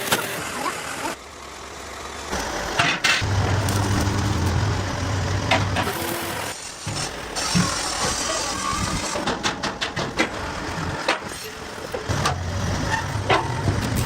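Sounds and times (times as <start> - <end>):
machinery humming: 0.0 - 9.2.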